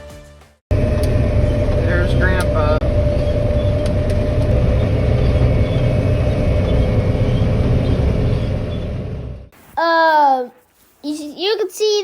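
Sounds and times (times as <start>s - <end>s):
diesel farm machinery rumbling: 0.7s - 9.5s
steady machine whine: 0.7s - 9.5s.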